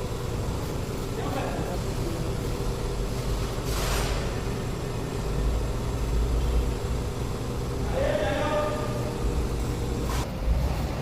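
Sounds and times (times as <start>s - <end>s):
low mechanical rumble: 0.0s - 11.0s
short hiss: 3.6s - 4.6s.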